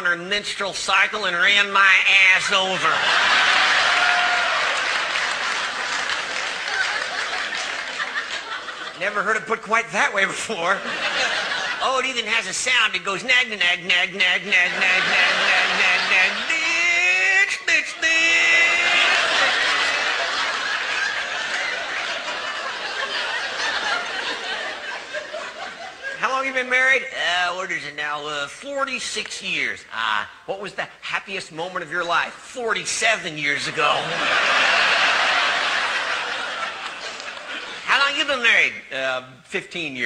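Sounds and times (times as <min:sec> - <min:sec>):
audience applauding: 0:03.2 - 0:08.9, 0:14.7 - 0:17.1, 0:18.0 - 0:24.4.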